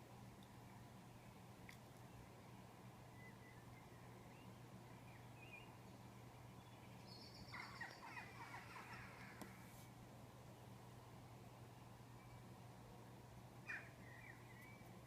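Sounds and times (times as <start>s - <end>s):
faint low hum: 0.0s - 15.0s.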